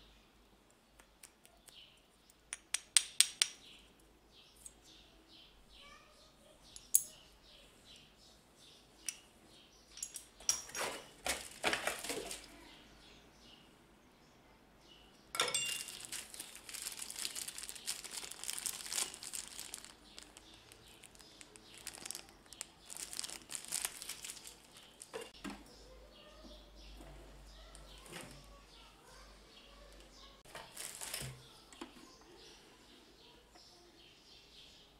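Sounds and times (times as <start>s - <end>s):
packaging clicks and knocks: 10.0s - 12.5s, 15.4s - 25.3s
wrapping crinkling: 11.2s - 12.5s, 15.4s - 25.4s, 30.5s - 31.4s.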